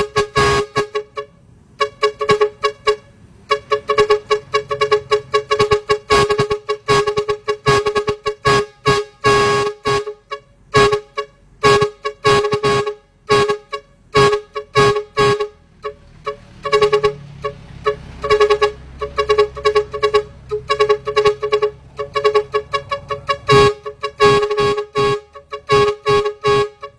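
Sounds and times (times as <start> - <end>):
air horn blasts: 0.0 - 26.9.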